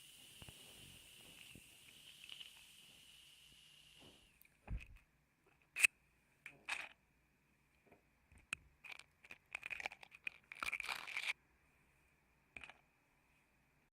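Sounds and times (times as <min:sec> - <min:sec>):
matchbox rustling: 0:08.8 - 0:11.4
matches scratching: 0:08.9 - 0:11.3.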